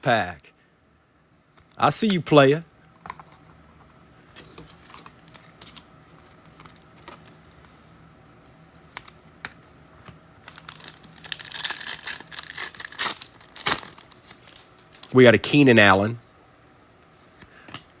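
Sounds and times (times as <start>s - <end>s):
trading cards flipped by hand: 8.8s - 11.1s.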